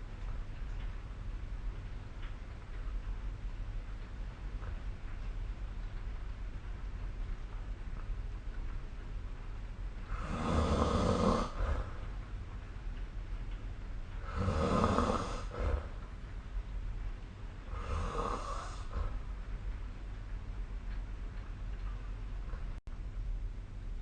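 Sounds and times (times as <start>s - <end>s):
steady low hum: 0.0s - 24.0s
person snoring: 10.1s - 11.9s, 14.2s - 15.9s, 17.7s - 19.2s.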